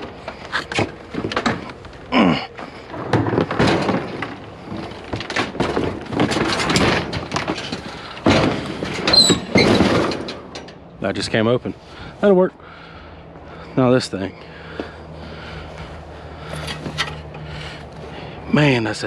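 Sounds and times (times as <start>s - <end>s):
scrap appliances knocking and scraping: 0.0s - 1.8s, 2.6s - 10.7s
loose metal parts rattling: 0.0s - 11.4s, 15.2s - 18.7s.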